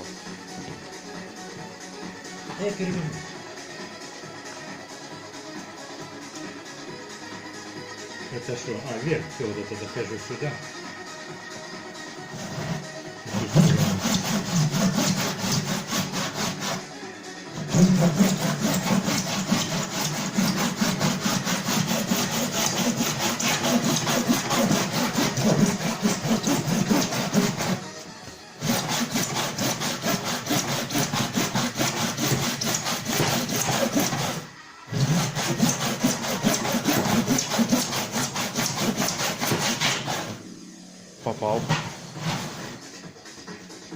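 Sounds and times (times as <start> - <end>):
saw cutting through metal: 12.3 - 28.0, 28.6 - 40.5.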